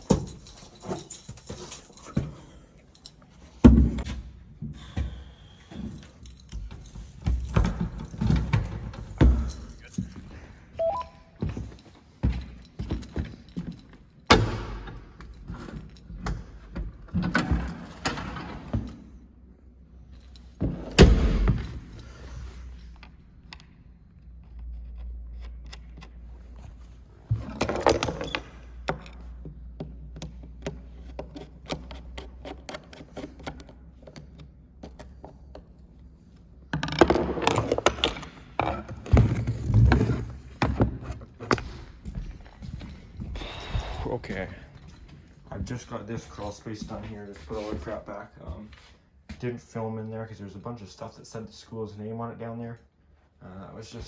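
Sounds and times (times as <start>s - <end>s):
objects thudding and scraping: 26.1s - 29.5s, 36.8s - 42.8s.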